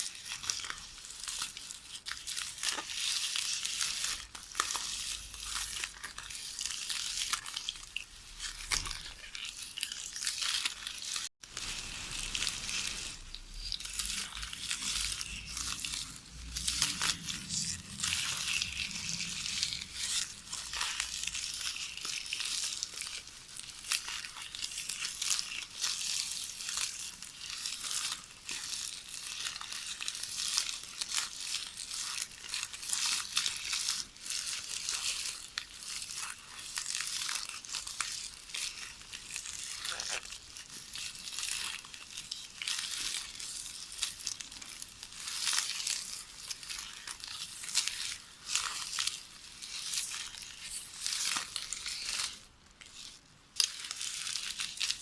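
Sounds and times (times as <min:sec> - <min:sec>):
magnetic tape rustling and crackling: 0:08.1 - 0:27.0.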